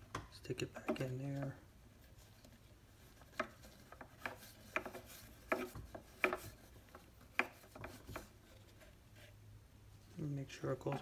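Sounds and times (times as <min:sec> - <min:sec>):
rubbing: 0:02.0 - 0:11.0.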